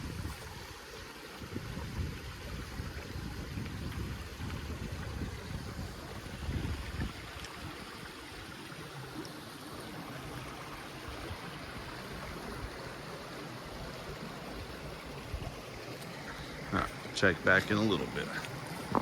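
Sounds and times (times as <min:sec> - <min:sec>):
stream water rushing: 0:00.0 - 0:19.0
wind gust on microphone: 0:01.4 - 0:07.7.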